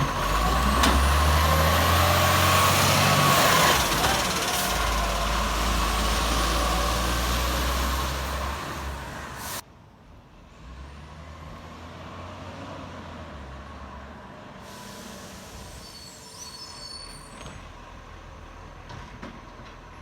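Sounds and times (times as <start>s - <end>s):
diesel engine running low: 0.0s - 9.6s
air brake hiss: 8.2s - 9.6s, 14.6s - 17.4s
thin squeal: 15.7s - 17.5s.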